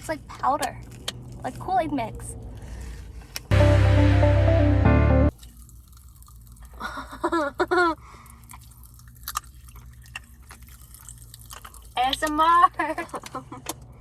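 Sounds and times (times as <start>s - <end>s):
chewing: 0.6s - 3.5s, 8.2s - 12.4s
background music: 3.5s - 5.3s
voice: 12.0s - 13.0s.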